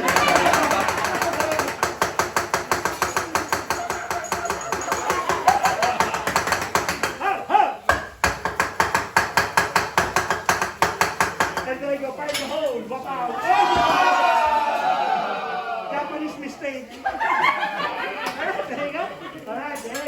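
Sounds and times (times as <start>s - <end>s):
metal spatulas clacking on griddle: 0.0s - 7.2s.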